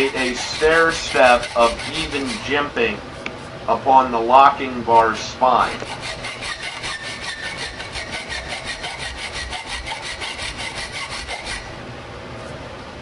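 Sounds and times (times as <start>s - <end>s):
hand file rasping on steel: 0.0s - 2.7s, 5.0s - 11.7s.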